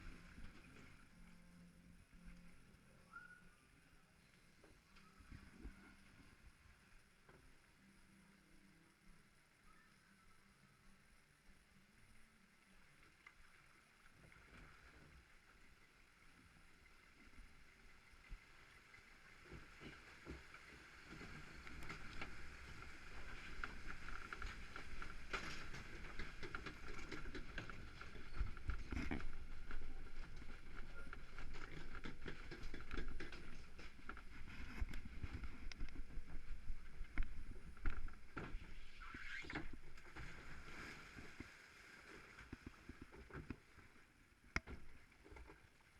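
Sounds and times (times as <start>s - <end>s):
water rushing and sloshing: 13.5s - 45.4s.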